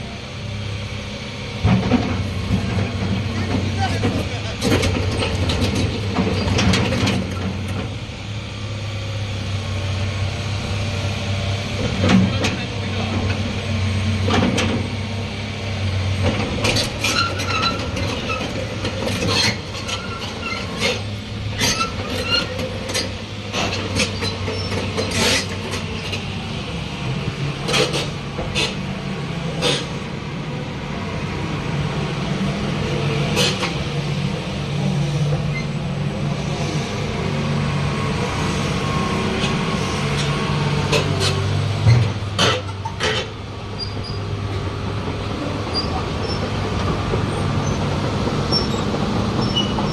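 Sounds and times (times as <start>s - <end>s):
excavator diesel engine running: 0.0s - 49.9s
machine squeaks: 43.8s - 44.3s, 45.7s - 46.4s, 48.5s - 49.9s.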